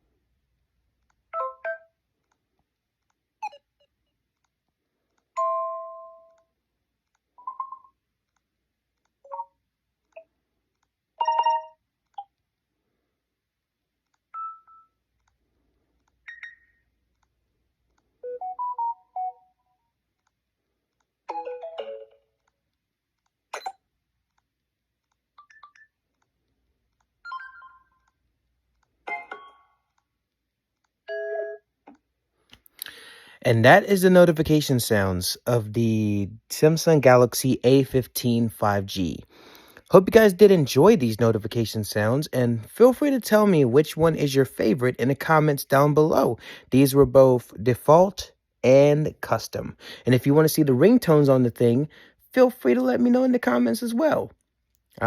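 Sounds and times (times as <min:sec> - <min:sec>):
phone notification chimes: 0:07.4 - 0:08.0, 0:11.2 - 0:11.8, 0:27.3 - 0:28.0.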